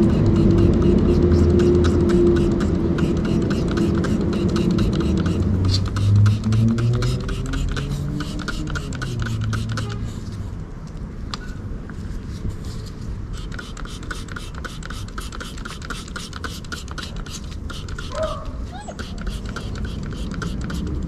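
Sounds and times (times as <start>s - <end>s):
brush scrubbing metal: 0.0s - 10.1s, 13.4s - 18.2s.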